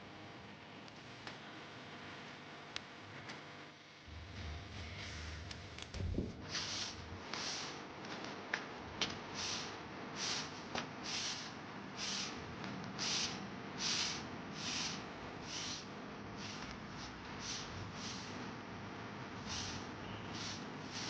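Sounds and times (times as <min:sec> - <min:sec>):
hand tool scraping ground: 0:06.5 - 0:07.8, 0:19.4 - 0:21.0.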